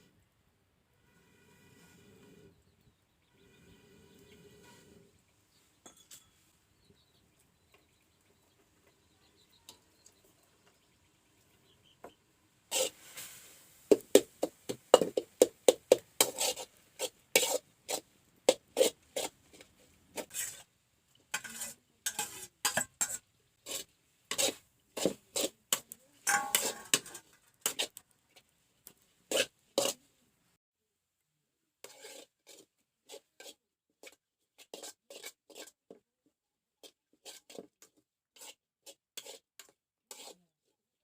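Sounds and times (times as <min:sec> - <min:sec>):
rasping scraping strokes: 0:03.4 - 0:05.1, 0:12.7 - 0:13.4, 0:16.2 - 0:19.6, 0:20.2 - 0:20.7, 0:21.3 - 0:28.0, 0:29.3 - 0:30.0, 0:31.8 - 0:33.6.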